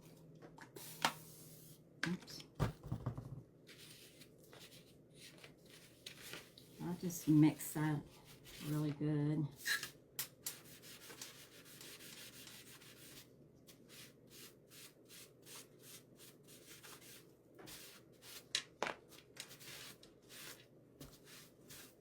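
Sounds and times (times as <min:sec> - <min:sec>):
scratchy rubbing strokes mixing paint: 0:05.6 - 0:08.9, 0:10.6 - 0:18.4, 0:19.5 - 0:22.0.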